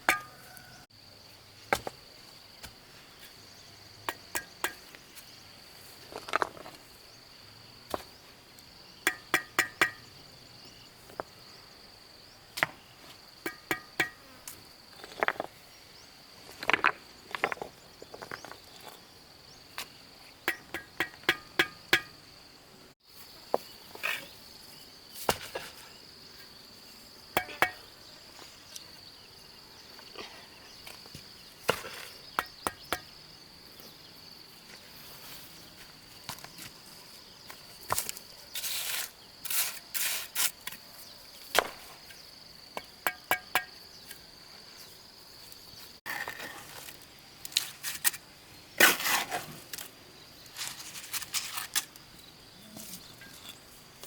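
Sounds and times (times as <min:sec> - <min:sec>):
stone knocking on stone: 0:20.5 - 0:22.2.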